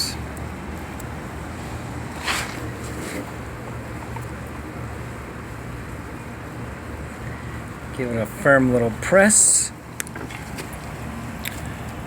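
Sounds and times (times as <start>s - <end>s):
rustling scrape on plastic case: 2.1s - 3.4s.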